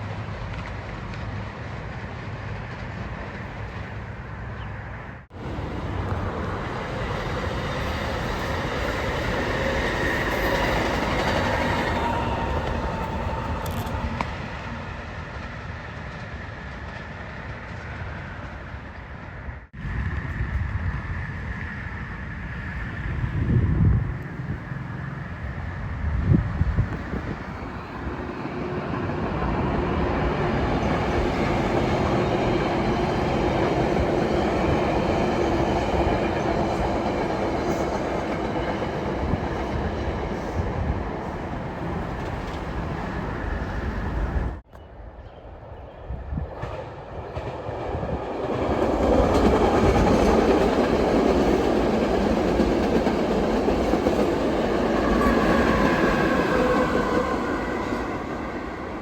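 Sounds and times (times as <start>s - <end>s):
train rolling on rails: 0.0s - 59.0s
wheels clickety-clack: 46.6s - 57.3s.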